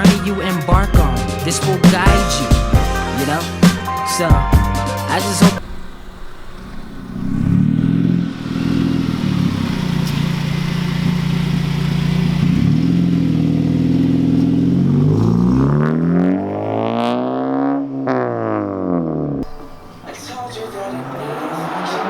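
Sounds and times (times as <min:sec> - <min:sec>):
car engine accelerating hard: 0:04.5 - 0:22.0.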